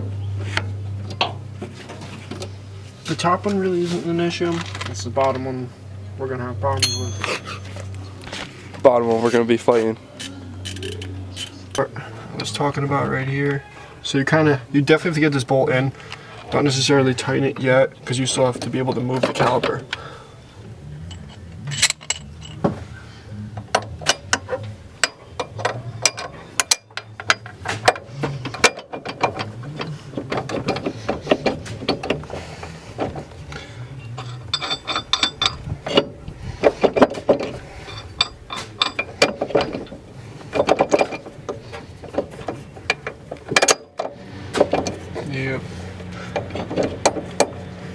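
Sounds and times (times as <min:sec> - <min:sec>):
metal tool clinks: 0:06.8 - 0:07.9, 0:21.1 - 0:22.6.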